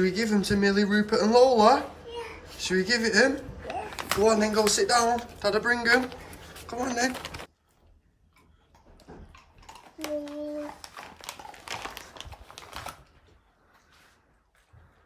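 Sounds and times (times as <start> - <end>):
treat packet crinkling and clicking: 3.6 - 7.5, 9.4 - 13.2.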